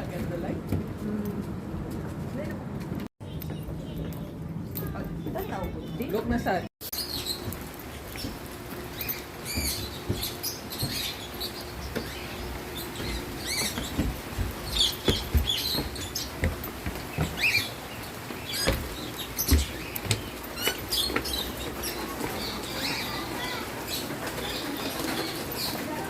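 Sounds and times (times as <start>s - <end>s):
small birds chirping: 3.2s - 26.0s.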